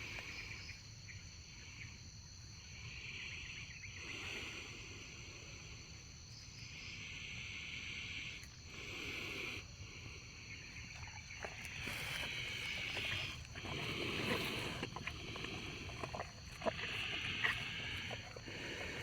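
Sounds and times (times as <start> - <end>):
high insect trill: 0.0 - 19.0
cow snoring: 11.0 - 19.0.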